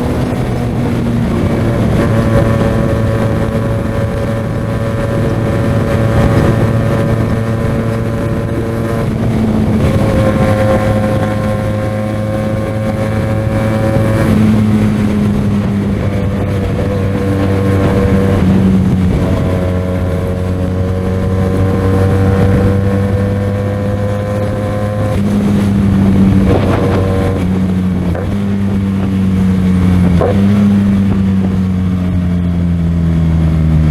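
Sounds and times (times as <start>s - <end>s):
motorcycle engine changing gear: 0.0s - 33.9s
wind and road noise: 0.0s - 33.9s.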